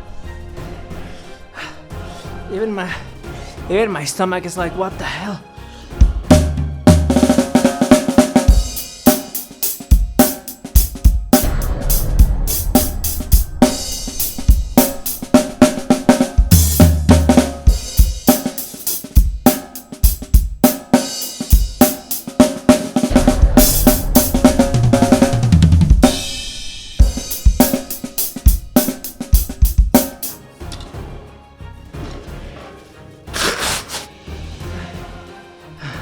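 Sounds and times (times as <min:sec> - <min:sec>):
drum kit played fast: 0:06.0 - 0:30.4, 0:33.4 - 0:34.1.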